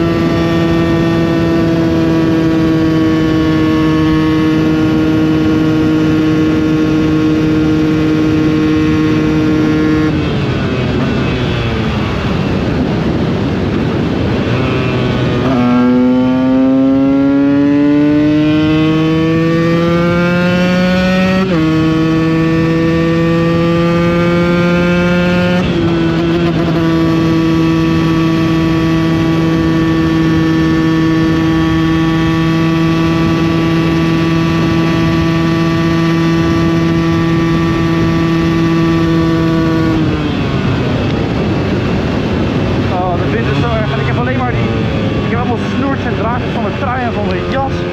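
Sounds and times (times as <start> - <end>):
wind rush: 0.0 - 47.9
two-stroke engine revving: 14.2 - 47.9.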